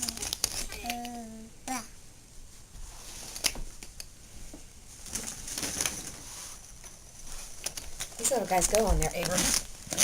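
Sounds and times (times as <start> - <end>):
gift wrapping crinkling: 0.0 - 1.1, 5.0 - 10.0.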